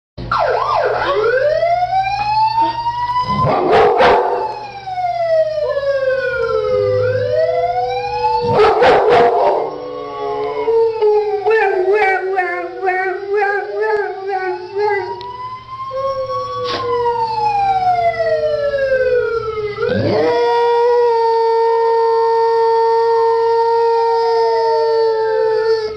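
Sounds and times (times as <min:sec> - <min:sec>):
dog howling: 0:08.4 - 0:17.6, 0:19.8 - 0:25.9.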